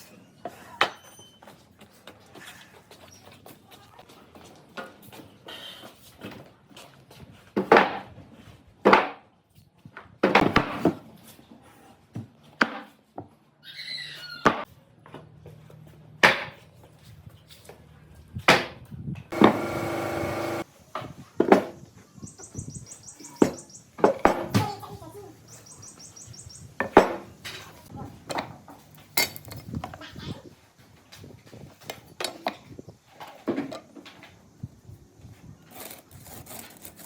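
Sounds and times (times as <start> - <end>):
steady buzz: 19.3 - 20.7.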